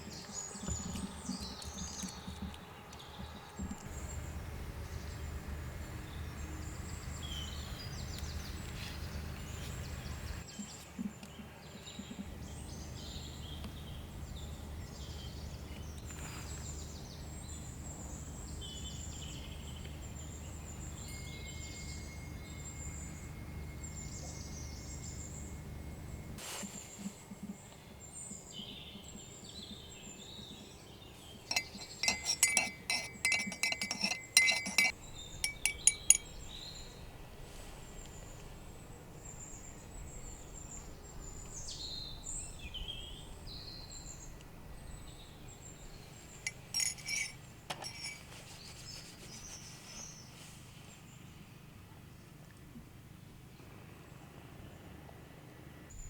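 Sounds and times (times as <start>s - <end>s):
tableware clinking: 31.5s - 36.3s, 46.5s - 48.3s
birds chirping: 31.5s - 36.6s.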